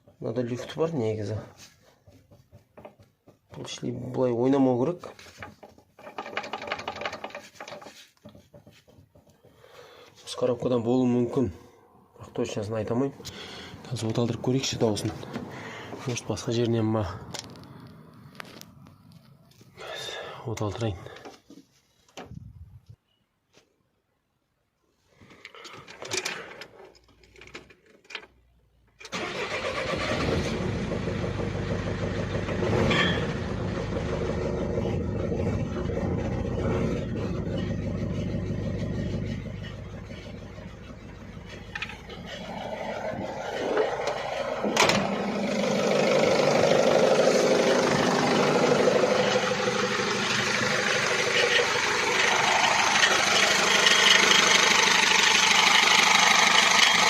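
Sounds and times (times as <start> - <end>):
diesel engine running: 29.6 - 57.0.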